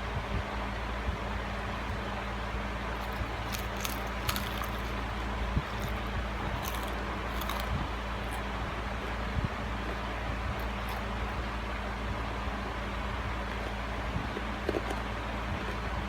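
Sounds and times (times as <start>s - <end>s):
steady low hum: 0.0s - 16.0s
fried chicken crunching: 2.9s - 9.2s, 9.8s - 11.5s, 13.4s - 15.8s.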